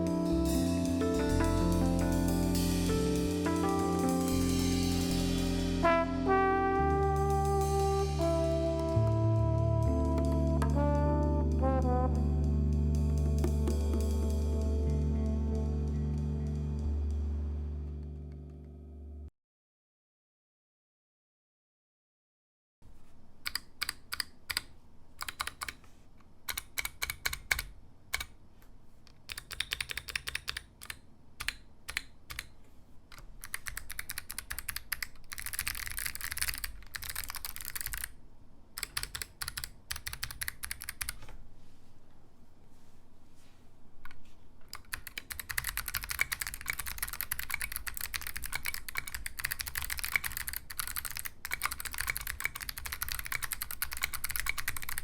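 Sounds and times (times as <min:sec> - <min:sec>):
mechanical keyboard typing: 0:23.4 - 0:25.8, 0:26.5 - 0:28.4, 0:29.2 - 0:38.2, 0:38.8 - 0:41.2, 0:44.7 - 0:55.0.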